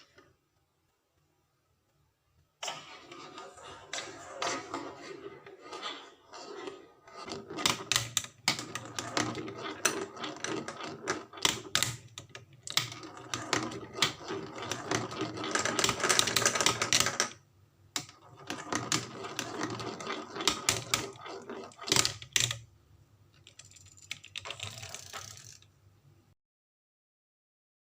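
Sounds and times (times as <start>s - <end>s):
wooden toys clattering down track: 7.3s - 17.4s, 18.0s - 22.6s, 23.4s - 25.7s.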